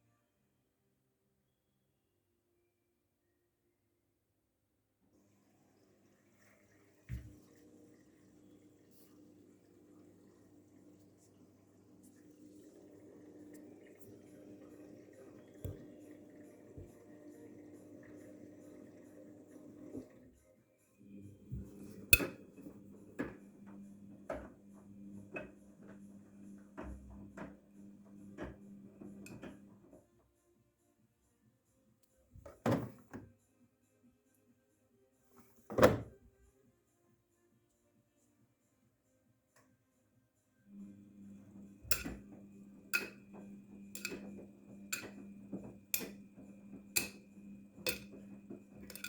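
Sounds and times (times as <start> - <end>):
washing machine motor hum: 5.2 - 20.3, 21.0 - 30.0, 40.7 - 49.0.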